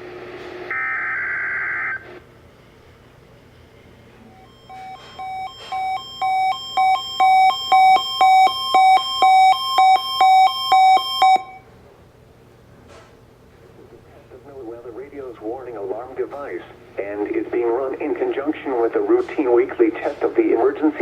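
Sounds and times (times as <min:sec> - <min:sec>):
electronic alert beeping: 0:04.4 - 0:11.6.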